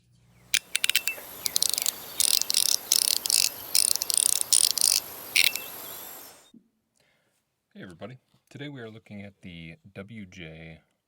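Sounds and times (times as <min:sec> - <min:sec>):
fidget slider clicking: 0:00.5 - 0:06.4.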